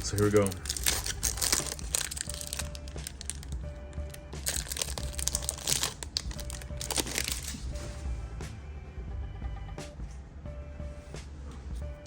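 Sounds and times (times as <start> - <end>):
foil pack crinkling: 0.0 - 7.7
background music with repeating note: 0.0 - 12.0.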